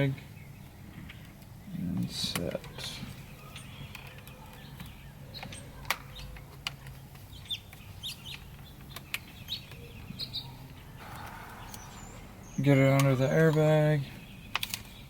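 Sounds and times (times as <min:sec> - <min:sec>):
high bird chirps: 0:07.3 - 0:15.0.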